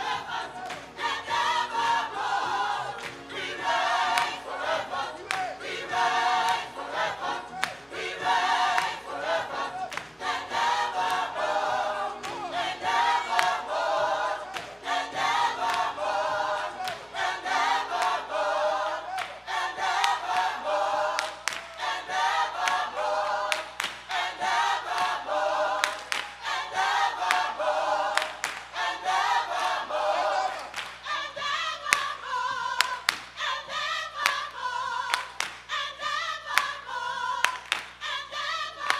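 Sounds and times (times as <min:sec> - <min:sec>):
gospel choir singing: 0:00.0 - 0:38.9
sharp hand claps: 0:00.6 - 0:01.0, 0:03.0 - 0:03.3, 0:04.1 - 0:04.5, 0:05.2 - 0:05.6, 0:06.4 - 0:06.8, 0:07.6 - 0:07.9, 0:08.7 - 0:09.1, 0:09.9 - 0:10.2, 0:12.2 - 0:12.5, 0:13.3 - 0:13.7, 0:14.5 - 0:14.8, 0:15.6 - 0:16.0, 0:16.8 - 0:17.1, 0:17.9 - 0:18.3, 0:19.2 - 0:19.4, 0:20.0 - 0:21.9, 0:22.6 - 0:22.9, 0:23.5 - 0:24.2, 0:25.8 - 0:26.4, 0:27.2 - 0:27.5, 0:28.1 - 0:28.8, 0:30.5 - 0:31.0, 0:31.9 - 0:32.2, 0:32.8 - 0:33.4, 0:34.2 - 0:35.7, 0:36.5 - 0:36.8, 0:37.4 - 0:38.0.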